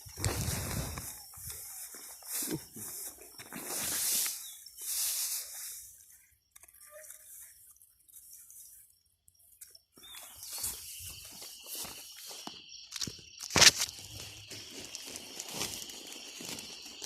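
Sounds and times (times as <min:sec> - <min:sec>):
hissing rustle: 0:00.0 - 0:06.2
footsteps: 0:00.0 - 0:08.8, 0:09.6 - 0:17.0.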